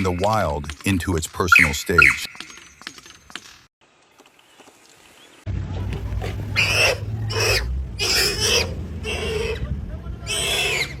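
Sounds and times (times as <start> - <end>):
animal harsh cries: 6.6 - 9.7, 10.3 - 11.0.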